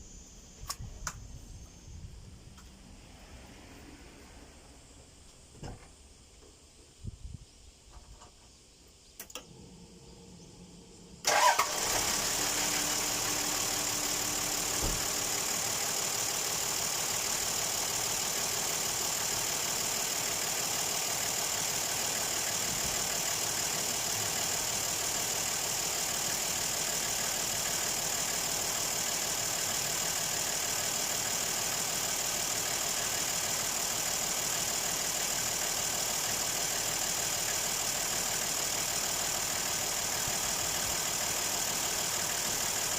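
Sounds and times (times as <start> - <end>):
engine starting and idling: 9.2 - 42.9.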